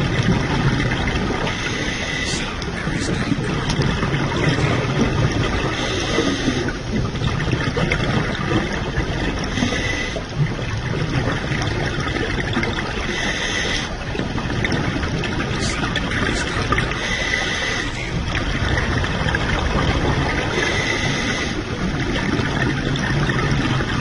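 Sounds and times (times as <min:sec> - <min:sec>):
underwater bubbling and gurgling: 0:00.0 - 0:24.0.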